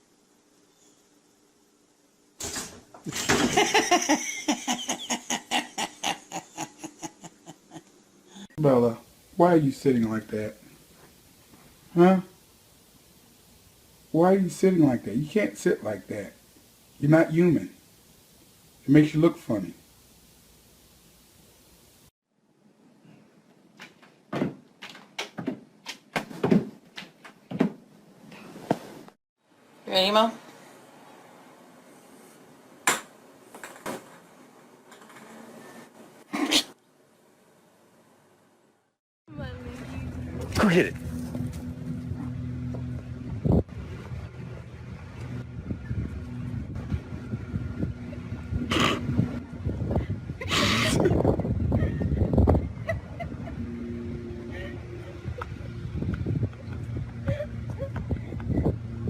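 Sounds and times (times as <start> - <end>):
sharp knocks and thumps: 23.8 - 27.8.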